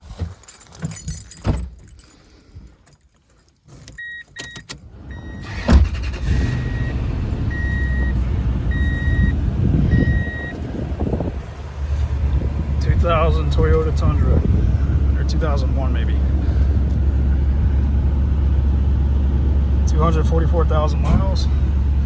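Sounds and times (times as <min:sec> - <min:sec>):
keys jangling and clicking: 0:00.1 - 0:04.9
engine starting and idling: 0:04.7 - 0:22.0
warning chime beeping: 0:06.4 - 0:10.6.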